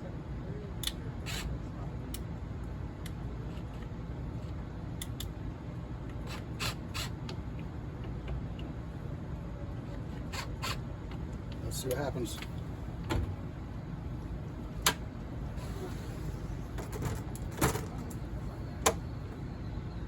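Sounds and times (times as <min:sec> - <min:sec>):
steady low rumble: 0:10.8 - 0:20.0.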